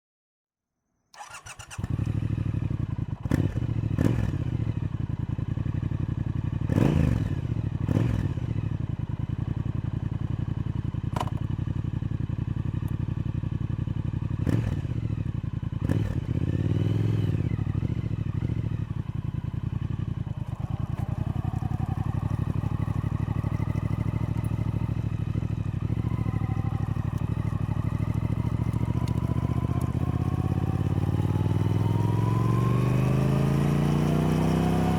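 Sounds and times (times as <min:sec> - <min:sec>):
motorcycle engine running: 0:01.2 - 0:34.9.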